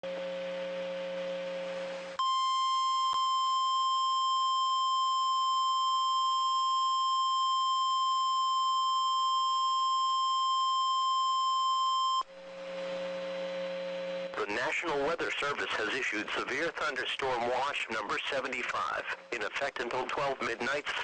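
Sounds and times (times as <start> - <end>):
low buzzing hum and hiss: 12.2 - 21.0.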